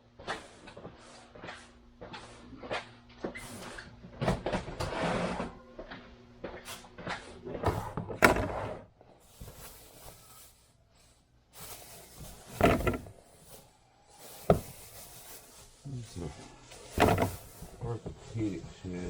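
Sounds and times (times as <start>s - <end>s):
knocks and rustling: 7.6s - 10.2s, 11.7s - 13.6s, 14.3s - 15.6s, 16.8s - 18.3s
rummaging through storage bin: 7.7s - 10.6s, 11.6s - 13.6s, 14.2s - 15.8s, 16.8s - 18.0s.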